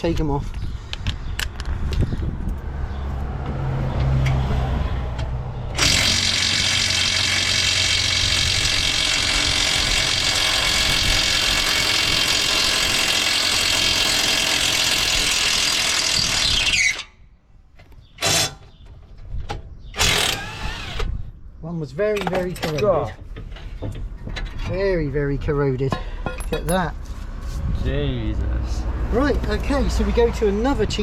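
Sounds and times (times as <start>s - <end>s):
impact wrench running: 5.8s - 17.0s.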